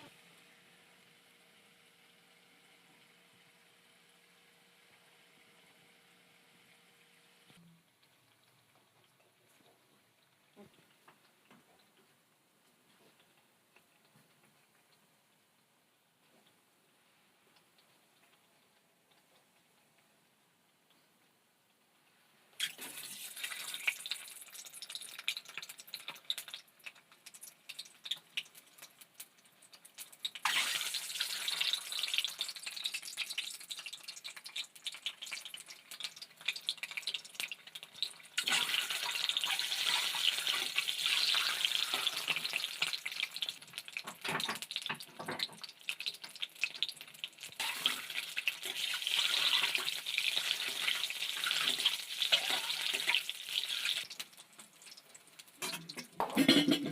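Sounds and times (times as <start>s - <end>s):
food sizzling in hot oil: 22.6s - 56.8s.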